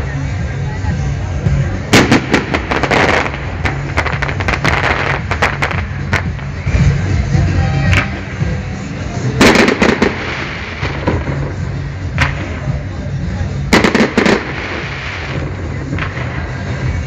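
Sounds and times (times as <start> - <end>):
firework cracks: 1.9 - 7.0, 9.4 - 12.9, 13.7 - 17.0.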